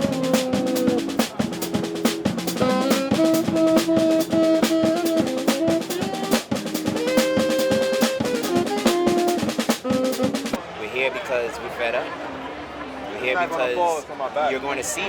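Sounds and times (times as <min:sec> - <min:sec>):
fast drum beat: 0:00.0 - 0:10.6
melody of held notes: 0:00.0 - 0:10.6.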